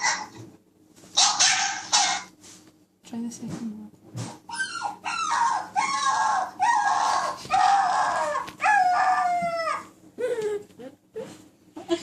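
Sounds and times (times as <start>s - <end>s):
recorded dog howling from phone: 4.5s - 9.9s.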